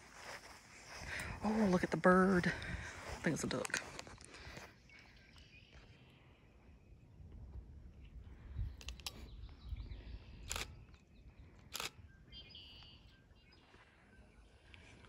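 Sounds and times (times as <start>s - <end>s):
wind rumble on microphone: 0.9s - 3.8s, 7.0s - 12.6s
bird chirp: 4.7s - 7.3s, 8.0s - 15.0s
sharp clicks: 8.8s - 9.3s, 10.4s - 11.0s, 11.6s - 12.0s.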